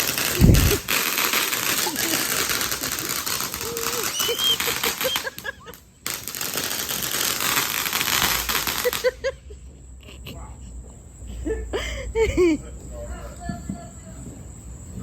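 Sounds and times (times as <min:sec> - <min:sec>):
firework fountain crackling: 0:00.0 - 0:09.6.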